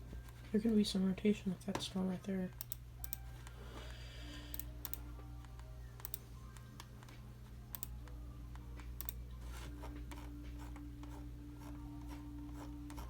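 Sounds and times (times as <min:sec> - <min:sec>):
low electrical hum: 0:00.0 - 0:13.0
computer keys clicking: 0:02.6 - 0:03.2, 0:04.5 - 0:08.2, 0:08.8 - 0:09.2.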